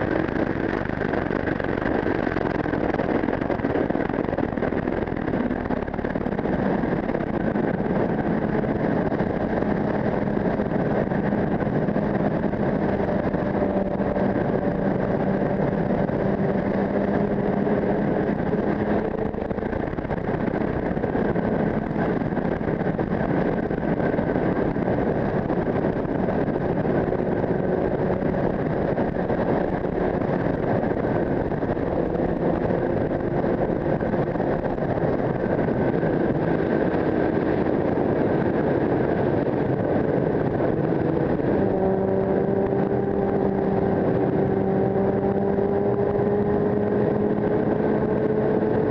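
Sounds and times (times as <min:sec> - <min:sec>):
motorcycle engine cruising: 0:00.0 - 0:48.9
wind noise on helmet: 0:00.0 - 0:48.9.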